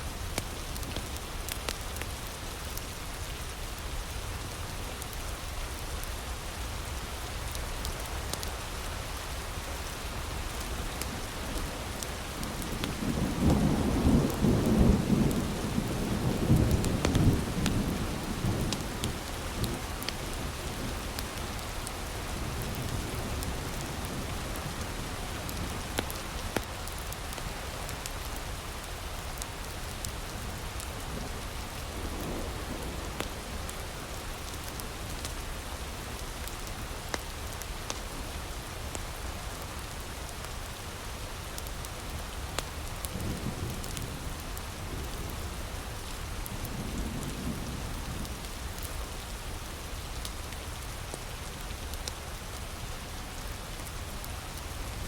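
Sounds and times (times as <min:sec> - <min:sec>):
heavy rain: 0:00.0 - 0:55.0
wood fire crackling: 0:00.2 - 0:03.6, 0:04.4 - 0:13.5, 0:14.3 - 0:46.1, 0:48.2 - 0:54.8
thunder rumbling: 0:10.2 - 0:26.4.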